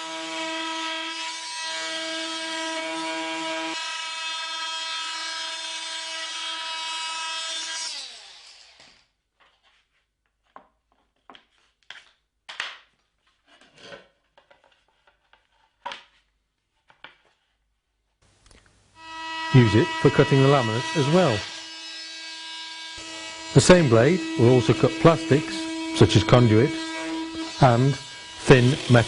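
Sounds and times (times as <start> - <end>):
oscillating multitool buzzing: 19.0 - 29.0.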